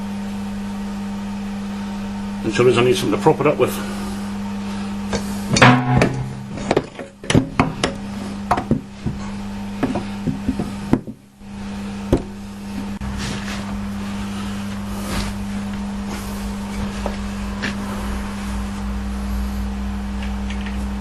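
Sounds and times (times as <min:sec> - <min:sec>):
steady low hum: 0:00.0 - 0:21.0
sharp knocks and wooden clunks: 0:05.5 - 0:11.2, 0:12.1 - 0:12.4.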